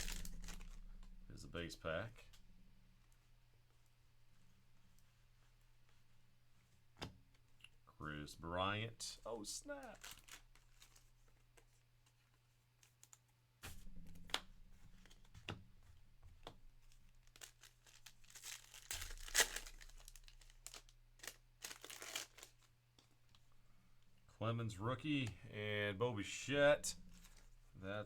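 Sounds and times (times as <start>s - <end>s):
card pack wrapper tearing: 0.0s - 0.8s, 9.7s - 11.2s, 17.2s - 22.7s.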